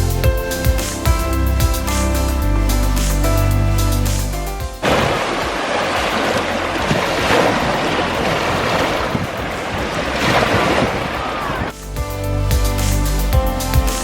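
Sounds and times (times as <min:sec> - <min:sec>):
waves washing onto beach: 0:04.8 - 0:11.7
wind buffeting microphone: 0:04.8 - 0:11.7.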